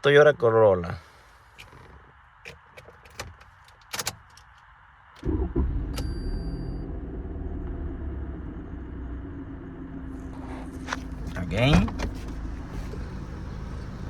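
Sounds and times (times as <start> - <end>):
car engine starting and idling: 5.2 - 14.0.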